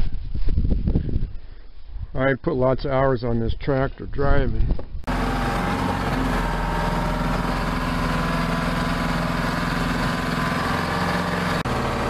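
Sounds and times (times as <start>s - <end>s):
large engine idling: 5.1s - 12.0s.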